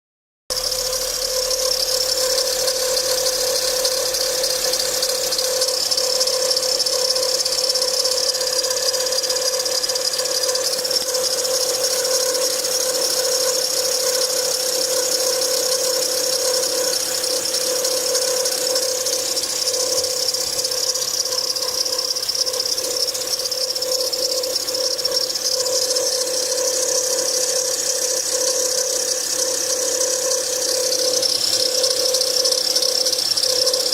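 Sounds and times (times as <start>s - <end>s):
belt tensioner pulley whine and rattle: 0.5s - 33.9s.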